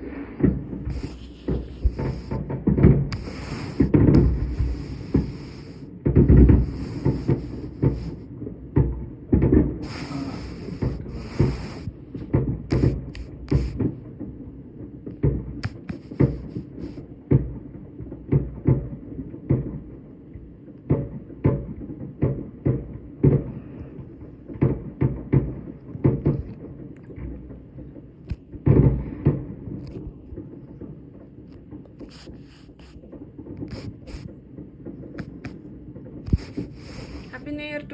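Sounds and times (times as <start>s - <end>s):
crackling hiss of fireworks: 0.0s - 37.9s
distant explosions rumbling: 0.0s - 37.9s
fireworks bangs and pops: 0.0s - 37.9s.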